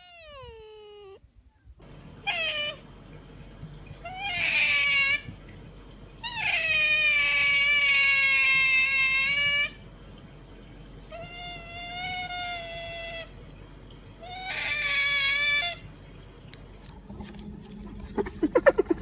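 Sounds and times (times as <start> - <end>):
animal high-pitched calls: 0.0 - 1.2, 2.2 - 2.8, 4.0 - 5.3, 6.2 - 9.8, 11.1 - 13.3, 14.2 - 15.9, 18.1 - 19.0.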